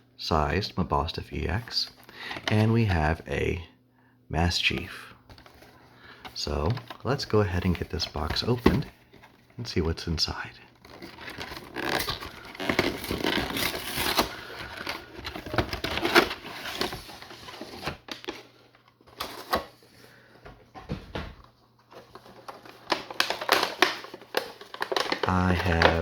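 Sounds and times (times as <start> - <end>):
packaging crinkling and tearing: 10.8 - 19.8, 21.9 - 26.0.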